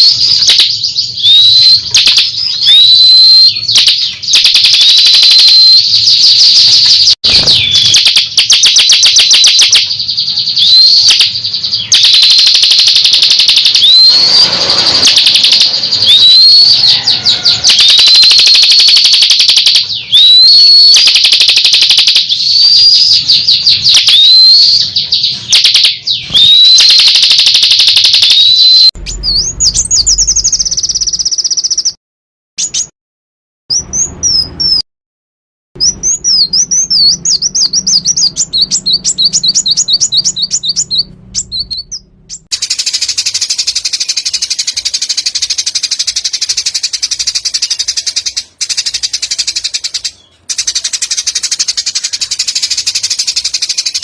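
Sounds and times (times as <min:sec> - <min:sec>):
songbird trills and whistles: 0:00.0 - 0:32.0, 0:32.6 - 0:32.9, 0:33.7 - 0:34.8, 0:35.8 - 0:54.0.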